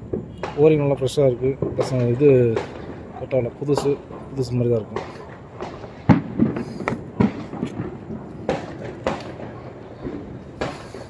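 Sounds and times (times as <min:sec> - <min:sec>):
workshop background noise: 0:00.0 - 0:11.0.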